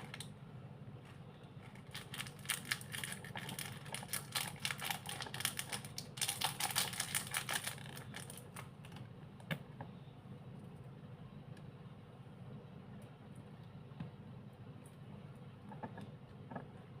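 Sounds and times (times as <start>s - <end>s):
slime clicking and crackling: 1.8s - 9.0s.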